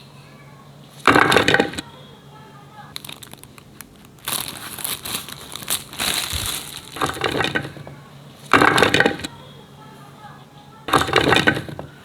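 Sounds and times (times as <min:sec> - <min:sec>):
crunching handling noise: 0:02.8 - 0:09.3.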